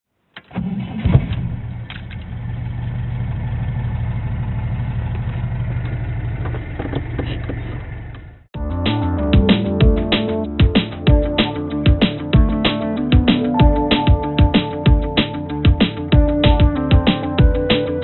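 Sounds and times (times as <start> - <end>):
vehicle engine idling: 1.3 - 8.5
music: 8.6 - 18.0.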